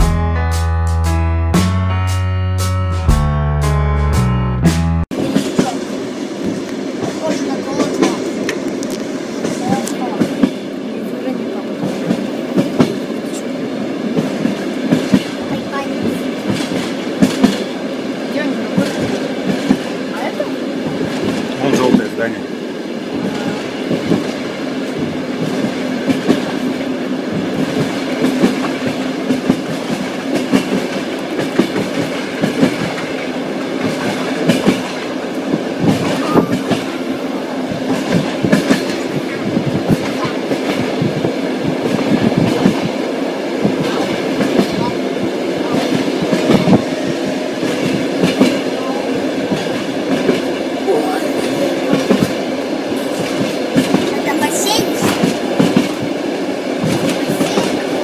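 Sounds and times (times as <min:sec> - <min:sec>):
train running rumble and hum: 0:00.0 - 0:58.0
train wheels clacking over rail joints: 0:14.1 - 0:22.4, 0:23.1 - 0:37.0, 0:37.7 - 0:58.0.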